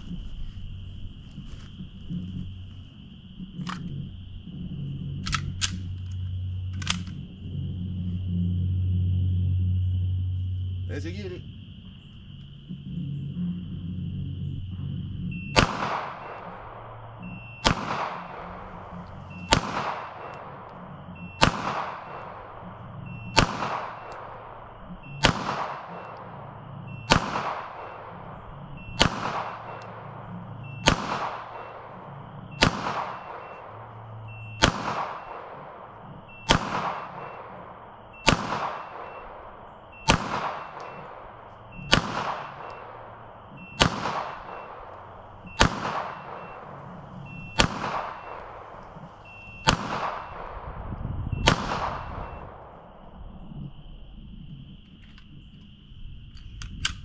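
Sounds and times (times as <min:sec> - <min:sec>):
pistol shots with echo: 0:15.6 - 0:16.8, 0:17.6 - 0:24.6, 0:25.2 - 0:26.4, 0:27.0 - 0:50.7, 0:51.4 - 0:52.6.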